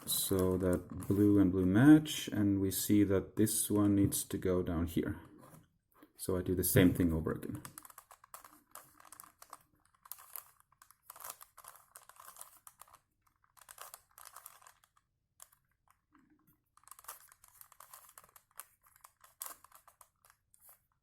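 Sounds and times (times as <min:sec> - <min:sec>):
puzzle cube plastic clicking: 0:07.6 - 0:20.8.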